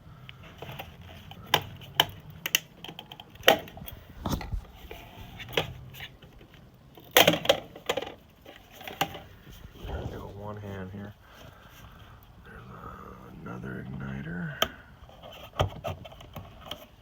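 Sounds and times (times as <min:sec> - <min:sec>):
faint low hum: 0:00.0 - 0:17.0
wire terminals clicking and snapping: 0:00.7 - 0:04.0.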